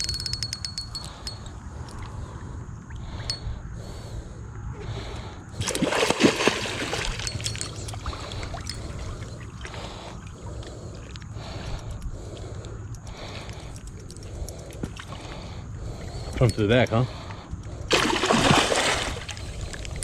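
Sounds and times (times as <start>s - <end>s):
small water sounds: 5.5s - 11.5s, 17.8s - 20.0s
fish splashing at water surface: 5.6s - 8.7s, 17.9s - 19.7s.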